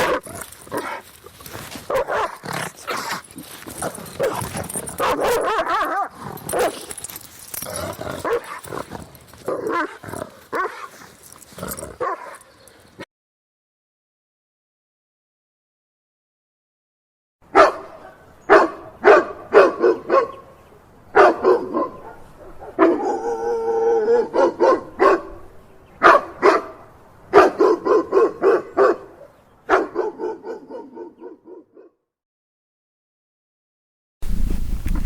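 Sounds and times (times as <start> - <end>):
dog barking: 0.0 - 1.1, 1.8 - 3.1, 4.0 - 7.2, 8.2 - 8.8, 9.4 - 11.1, 12.0 - 12.8, 17.5 - 20.5, 21.2 - 23.4, 24.0 - 25.4, 26.0 - 32.0
dog yelping: 0.0 - 11.1.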